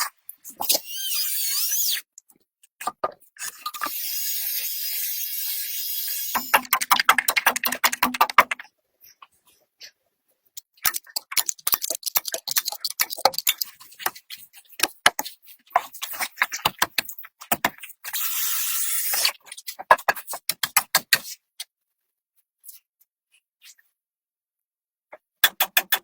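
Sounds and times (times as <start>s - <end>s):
irregular clicks and knocks: 6.4s - 8.7s.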